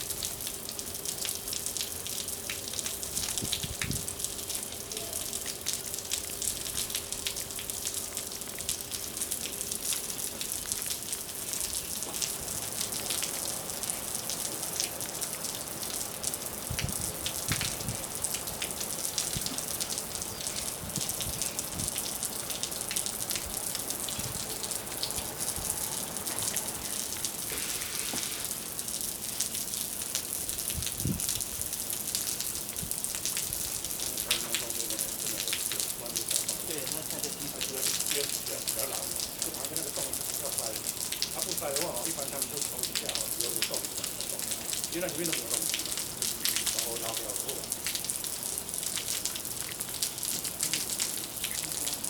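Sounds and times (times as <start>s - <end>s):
water spraying and splashing: 0.0s - 52.0s.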